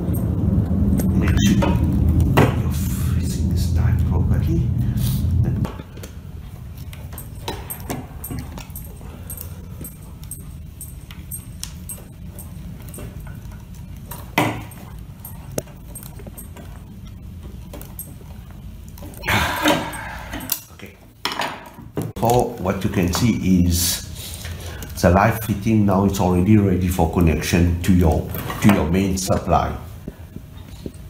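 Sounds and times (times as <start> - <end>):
steady low hum: 0.0 - 31.0
light metallic clicks and rattles: 5.7 - 21.4.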